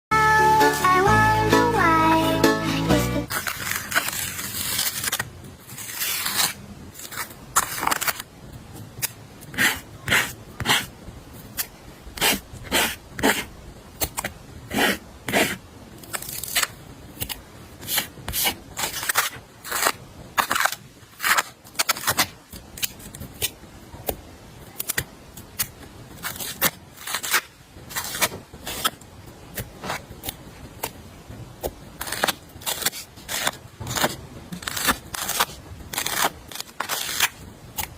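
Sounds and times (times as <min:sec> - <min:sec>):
packaging scraping: 0:03.3 - 0:08.3
plastic and paper crinkling: 0:03.3 - 0:08.3.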